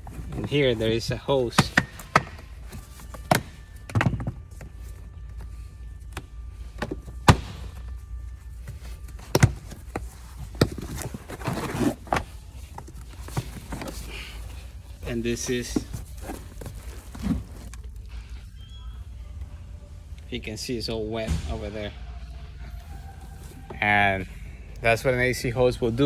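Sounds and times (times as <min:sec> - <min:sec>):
rustling: 0:07.1 - 0:18.4.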